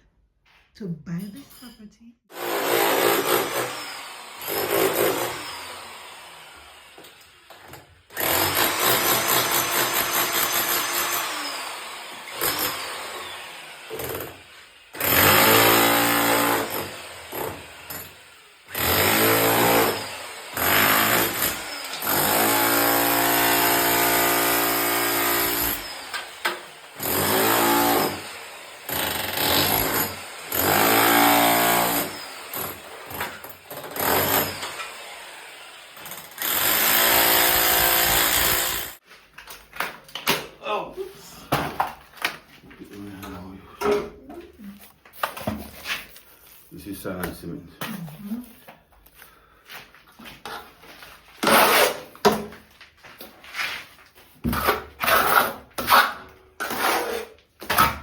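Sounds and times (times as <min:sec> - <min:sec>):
electric power tool running: 0:02.3 - 0:07.6, 0:08.2 - 0:39.0.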